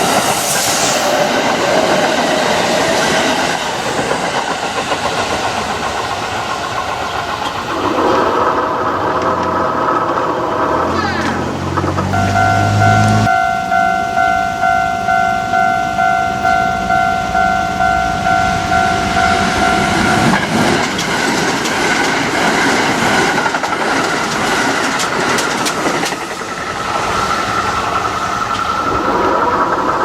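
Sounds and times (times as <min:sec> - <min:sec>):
train wheels clattering: 0:00.0 - 0:13.4, 0:15.2 - 0:30.0
level-crossing bell ringing: 0:12.1 - 0:20.8.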